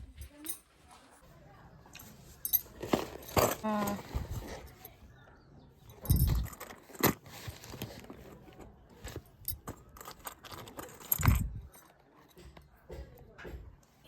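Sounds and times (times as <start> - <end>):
metal jewellery clinking: 0.0 - 0.7, 1.9 - 5.1, 5.8 - 8.4, 9.0 - 12.7.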